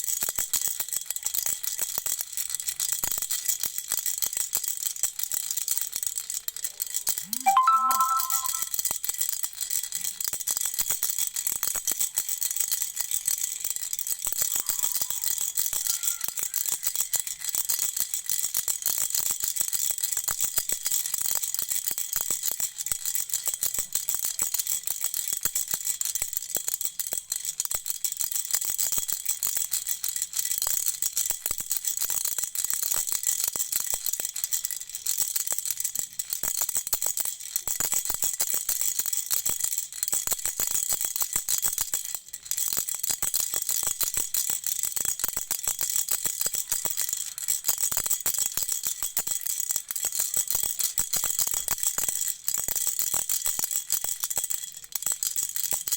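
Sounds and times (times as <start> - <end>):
toy rattle shaken: 0.0 - 8.7, 9.4 - 55.9
faint high ringing: 7.3 - 8.7.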